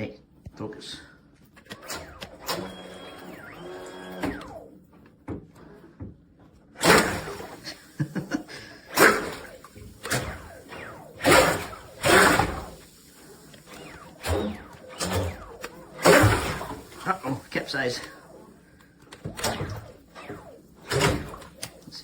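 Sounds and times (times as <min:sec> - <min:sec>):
electric motor whining: 0:01.8 - 0:04.7, 0:06.8 - 0:22.0
propeller churning water: 0:06.8 - 0:22.0.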